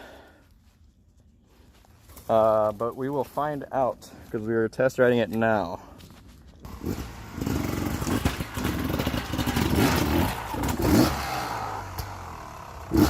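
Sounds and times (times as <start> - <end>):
dirt bike engine revving: 6.6 - 13.0.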